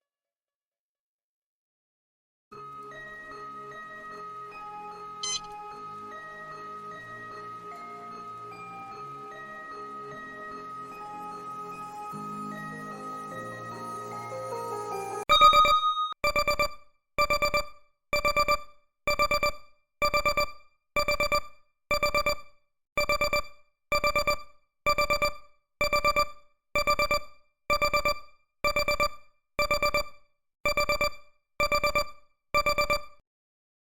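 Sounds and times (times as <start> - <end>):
alarm clock beeping: 3.2 - 13.0, 15.2 - 22.4, 23.0 - 30.1, 30.7 - 33.2.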